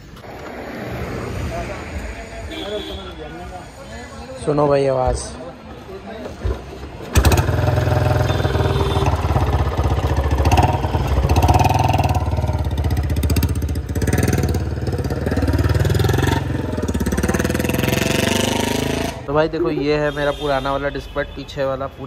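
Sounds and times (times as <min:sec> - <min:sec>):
motorcycle engine revving: 0:07.1 - 0:19.3.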